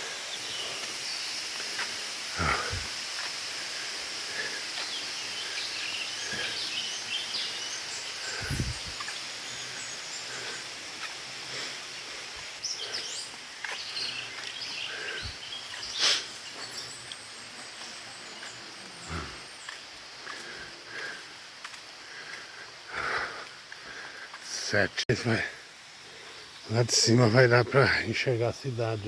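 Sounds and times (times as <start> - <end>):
steady high hiss: 0.0 - 29.0
bird chirps: 4.4 - 10.7, 12.6 - 20.0.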